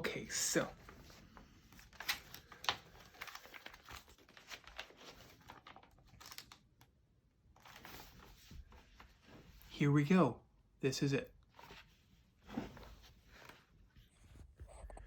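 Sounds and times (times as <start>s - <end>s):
paper crackles: 0.5s - 6.9s, 7.6s - 9.7s
paper pages rustling: 0.6s - 6.9s, 7.5s - 9.7s, 11.5s - 14.2s.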